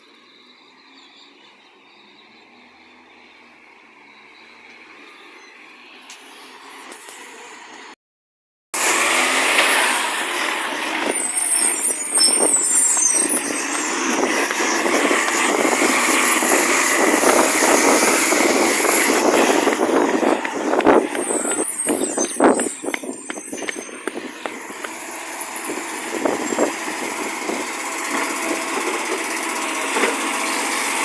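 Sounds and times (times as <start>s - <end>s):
garbage truck engine roaring: 8.8s - 31.0s
high squeaks: 8.8s - 31.0s.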